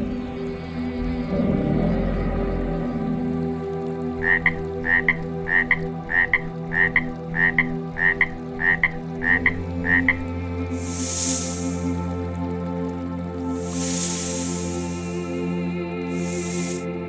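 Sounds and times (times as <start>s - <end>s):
frog croaking: 4.2s - 11.9s.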